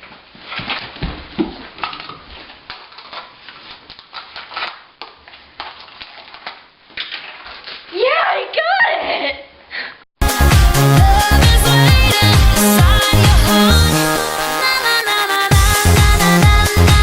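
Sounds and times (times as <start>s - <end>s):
rustling and scraping: 0.0s - 8.0s.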